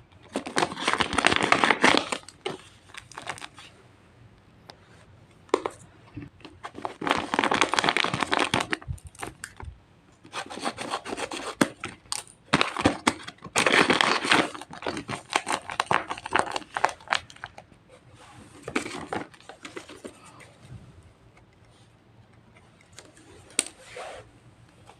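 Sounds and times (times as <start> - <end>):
paper crinkling and tearing: 0.2 - 3.7, 6.4 - 9.5, 10.3 - 17.6, 18.3 - 20.4.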